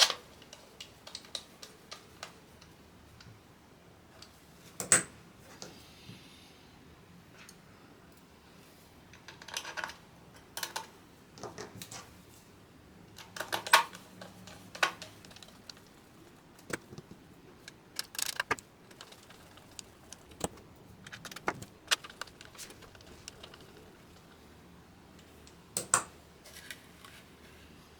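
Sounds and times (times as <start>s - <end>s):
keyboard parts clicking: 13.4s - 24.4s.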